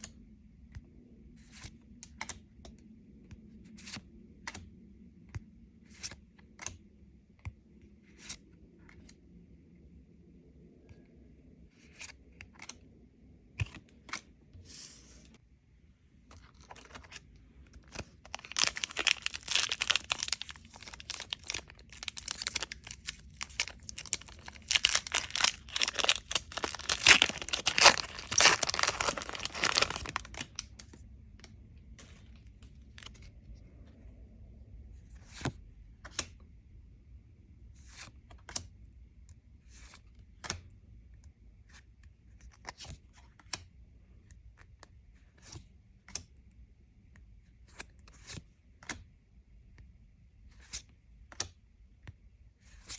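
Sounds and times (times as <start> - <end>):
handling clicks and rustles: 16.4 - 30.6
foil wrapper tearing and crinkling: 18.3 - 30.6.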